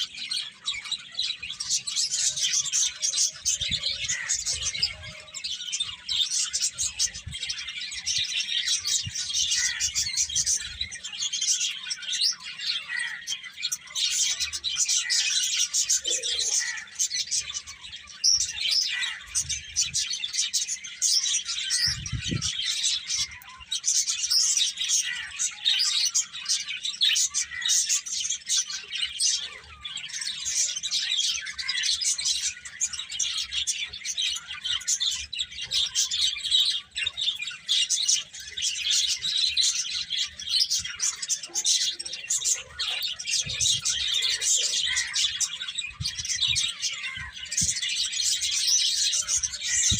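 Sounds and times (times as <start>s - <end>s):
small birds chirping: 0.0s - 49.9s.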